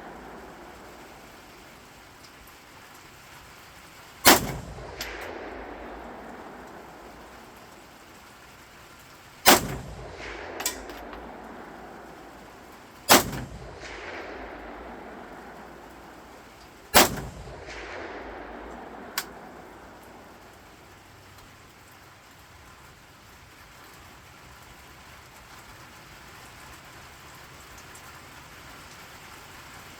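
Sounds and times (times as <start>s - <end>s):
rifle shots with rolling echo: 0.0s - 2.3s, 4.2s - 21.3s
faint sharp clicks: 4.3s - 7.9s, 9.5s - 20.6s.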